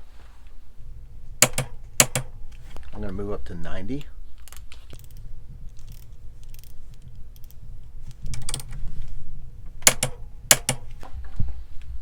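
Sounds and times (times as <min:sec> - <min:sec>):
torque wrench clicking: 0:01.4 - 0:02.3, 0:09.8 - 0:10.9.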